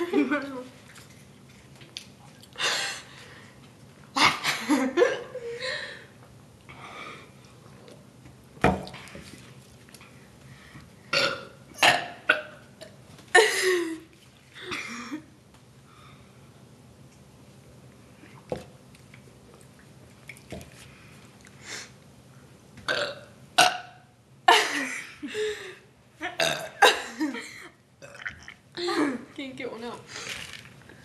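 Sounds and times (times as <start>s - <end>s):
person burping: 11.1s - 13.0s, 22.9s - 24.0s, 26.4s - 27.0s, 28.0s - 28.9s.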